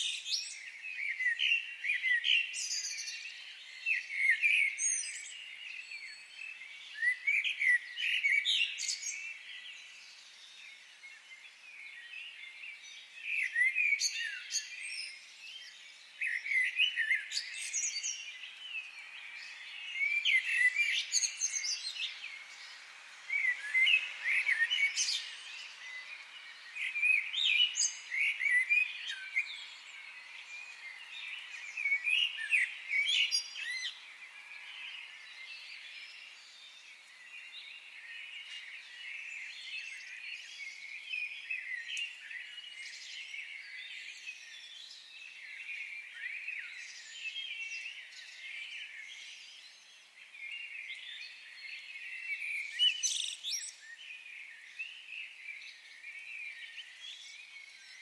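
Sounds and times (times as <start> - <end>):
faint steady hiss: 0.0 - 58.0
birds chirping: 15.6 - 43.8.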